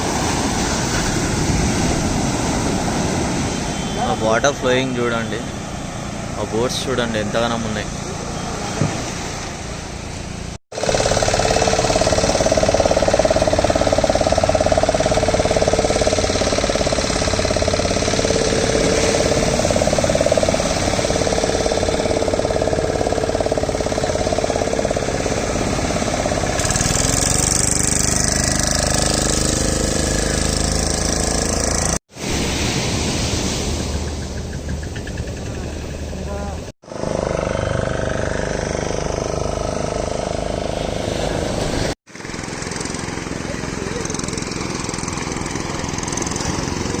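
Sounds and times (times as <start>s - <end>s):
engine running with heavy knocking: 10.7s - 32.0s, 33.9s - 47.0s.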